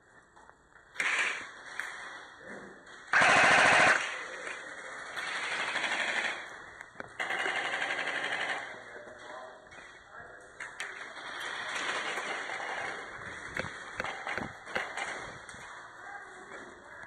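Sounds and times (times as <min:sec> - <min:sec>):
airsoft guns firing bursts: 0:01.0 - 0:01.8, 0:03.1 - 0:08.9, 0:11.0 - 0:15.2.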